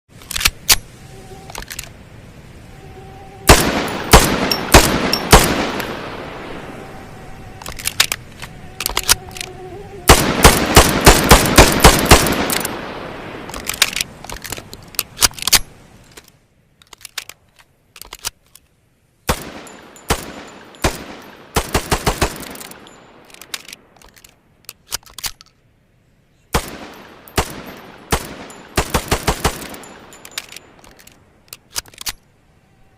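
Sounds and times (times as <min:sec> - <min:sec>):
pistol shots with echoes: 0:03.5 - 0:06.2, 0:10.1 - 0:13.1, 0:19.3 - 0:22.9, 0:26.6 - 0:30.2.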